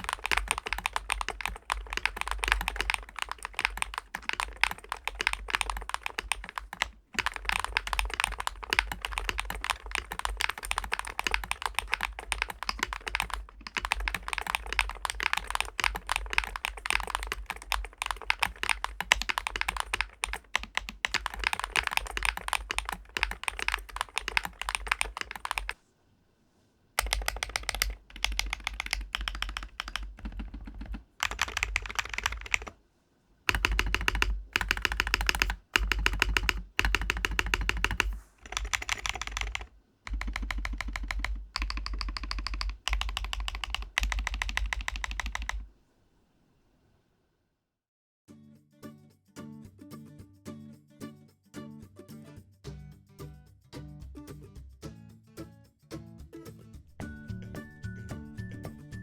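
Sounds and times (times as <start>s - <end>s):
keyboard key clacks: 0.0s - 25.8s.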